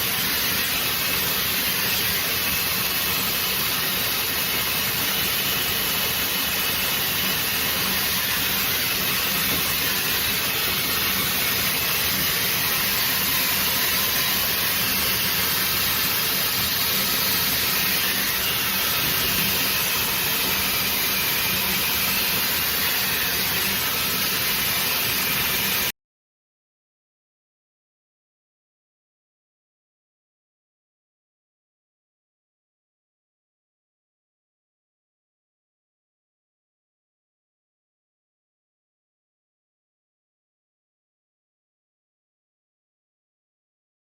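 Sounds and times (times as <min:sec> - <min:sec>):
hair dryer blowing air: 0:00.0 - 0:25.9.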